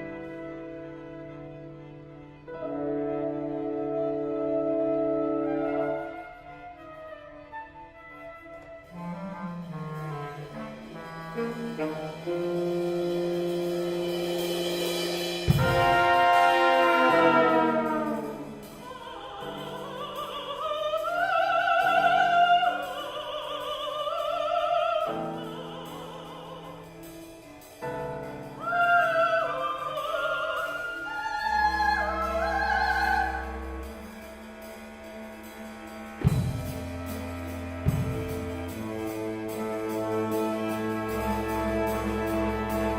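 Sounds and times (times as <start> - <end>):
chamber ensemble playing: 0.0 - 20.6, 25.2 - 42.9
classical voice singing: 16.8 - 27.2, 28.6 - 33.8.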